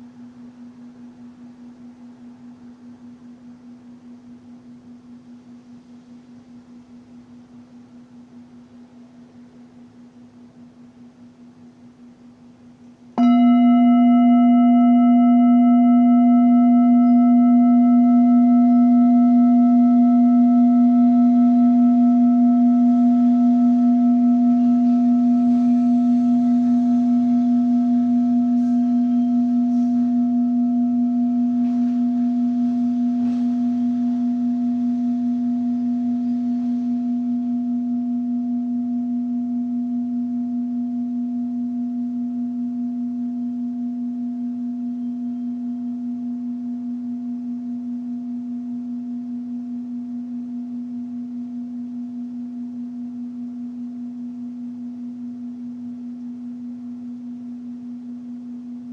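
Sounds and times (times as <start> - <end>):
singing bowl ringing: 13.2 - 58.9.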